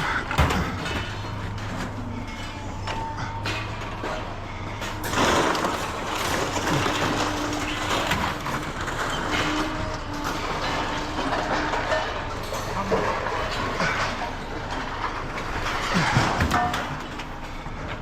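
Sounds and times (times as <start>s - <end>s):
low machine hum: 0.0s - 18.0s
scrap metal clattering: 0.0s - 18.0s
faint squeals: 1.7s - 14.5s.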